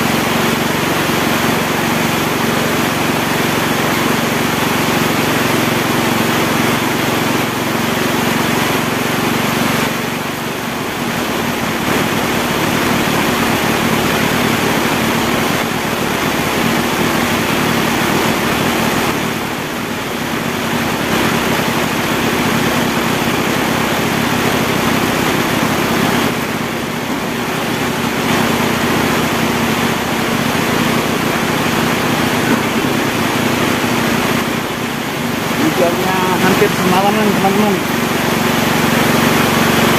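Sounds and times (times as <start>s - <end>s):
heavy rain pouring: 0.0s - 39.9s
steady low hum: 9.5s - 39.9s.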